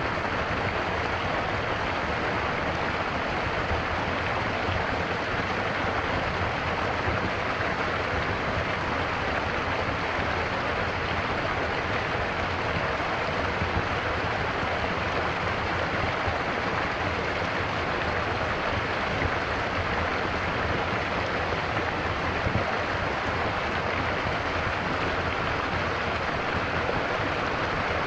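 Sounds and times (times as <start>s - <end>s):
stream water flowing and burbling: 0.0s - 28.0s.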